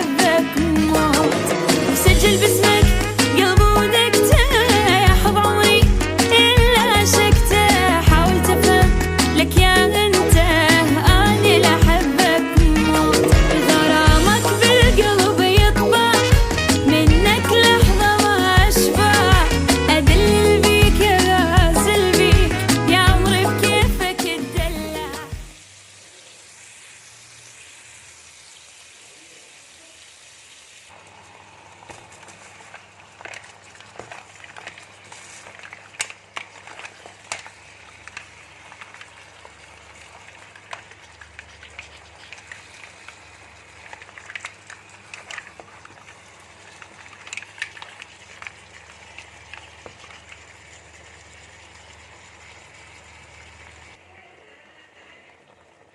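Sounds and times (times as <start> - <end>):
oil popping and crackling: 0.0 - 54.0
food sizzling in a pan: 23.8 - 53.9.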